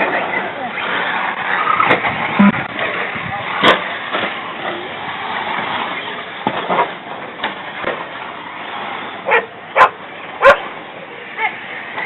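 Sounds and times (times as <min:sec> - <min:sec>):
remote-control cars whirring: 0:00.0 - 0:09.4
dog barking: 0:09.3 - 0:10.6.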